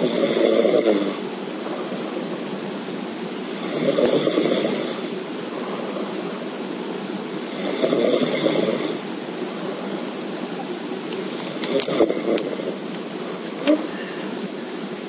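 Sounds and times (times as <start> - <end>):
person snoring: 0.0 - 2.3, 3.6 - 6.4, 7.5 - 9.0
steady hiss: 0.0 - 15.0.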